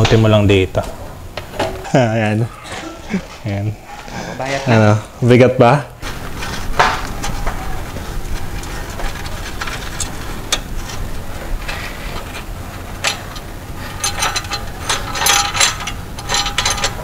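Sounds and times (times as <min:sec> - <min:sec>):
metal parts knocking and rubbing: 0:06.0 - 0:17.0
ringing metallic clinks: 0:13.9 - 0:17.0.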